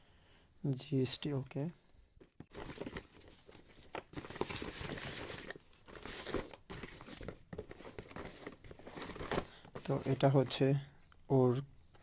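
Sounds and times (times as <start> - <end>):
packaging crinkling and rustling: 2.3 - 10.6.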